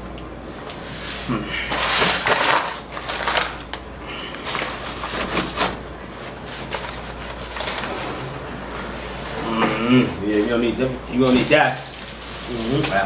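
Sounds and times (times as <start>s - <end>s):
bags and wrappers crinkling: 1.6s - 8.2s, 10.4s - 13.0s.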